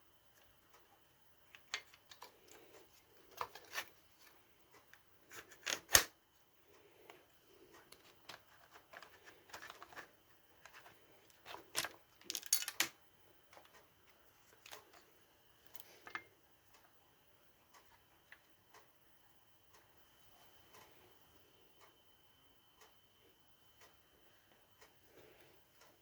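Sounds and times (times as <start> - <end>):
plastic and metal parts handled: 1.5 - 4.4, 5.3 - 6.1, 7.8 - 13.8, 14.4 - 15.1
hand tools clicking and tapping: 11.5 - 12.9.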